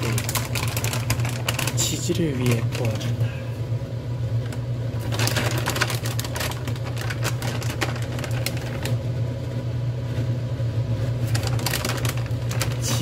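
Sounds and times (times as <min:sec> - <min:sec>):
food crackling in a wok: 0:00.0 - 0:03.0, 0:04.6 - 0:09.1, 0:11.2 - 0:13.0
low machine hum: 0:00.0 - 0:13.0.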